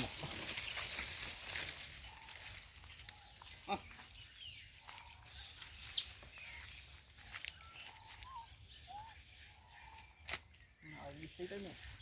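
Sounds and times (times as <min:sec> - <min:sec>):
animal chirps: 0:04.9 - 0:06.7.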